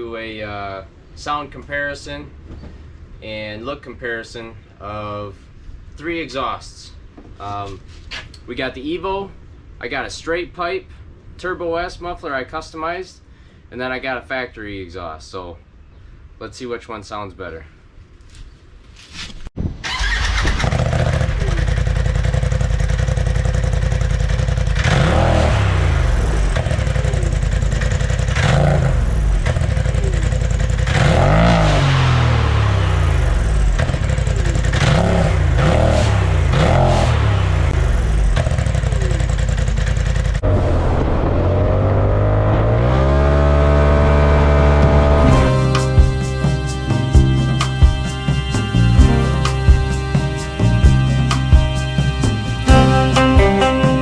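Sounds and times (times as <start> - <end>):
engine revving through exhaust: 20.6 - 53.7.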